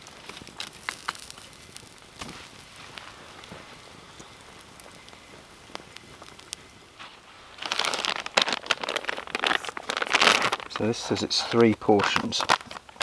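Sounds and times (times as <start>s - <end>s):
faint crackles: 0.0s - 13.0s
packet crinkling: 0.0s - 13.0s.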